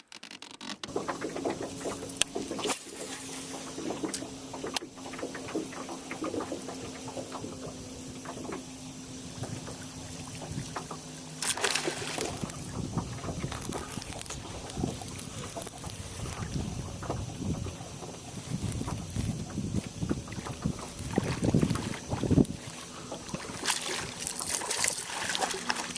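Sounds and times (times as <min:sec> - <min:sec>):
trickling water: 0:00.8 - 0:25.9
low hum: 0:00.9 - 0:25.9
small knocks and clicks: 0:10.7 - 0:17.3.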